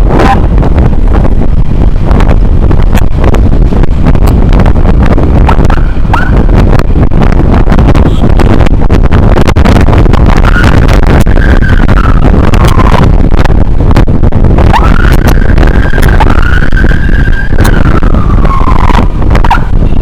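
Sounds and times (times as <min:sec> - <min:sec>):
siren wailing: 0:00.0 - 0:00.6, 0:05.4 - 0:06.6, 0:10.3 - 0:13.4, 0:14.6 - 0:20.0
road rumble: 0:00.0 - 0:20.0
wind buffeting: 0:00.0 - 0:20.0.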